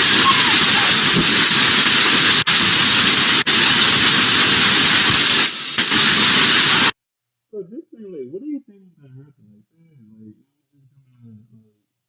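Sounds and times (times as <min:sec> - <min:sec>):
fountain firework hissing: 0:00.0 - 0:07.0.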